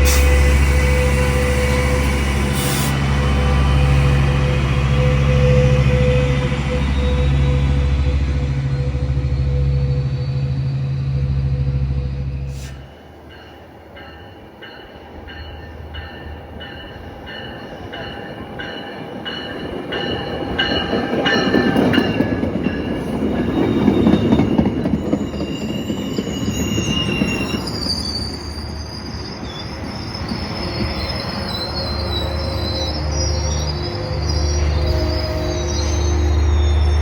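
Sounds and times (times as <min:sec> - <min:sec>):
train rumble: 0:00.0 - 0:37.0
train wheels clicking on rails: 0:12.5 - 0:28.5
wheel squeal: 0:23.4 - 0:37.0.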